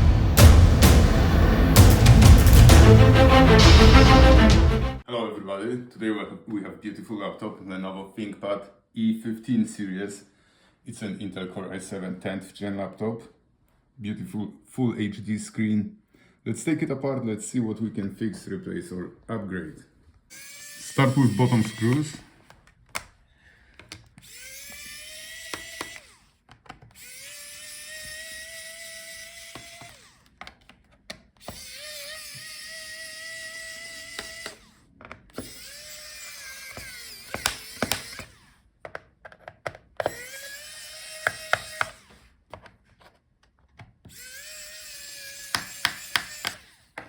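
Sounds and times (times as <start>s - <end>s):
electric screwdriver whirring: 20.3s - 22.3s, 23.9s - 30.7s, 31.4s - 38.7s, 40.0s - 42.4s, 44.1s - 47.0s
screwdriver bit and screws clicking: 20.3s - 22.3s, 23.8s - 42.7s, 43.8s - 46.8s.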